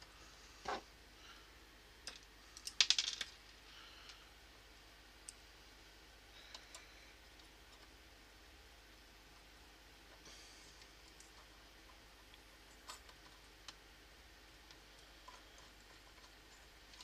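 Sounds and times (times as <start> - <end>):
small plastic parts clicking: 2.0 - 3.4.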